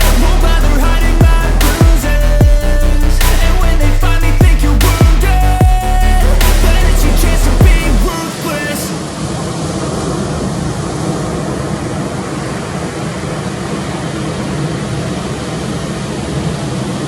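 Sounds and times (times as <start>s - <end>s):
ocean surf rushing: 6.4s - 17.0s.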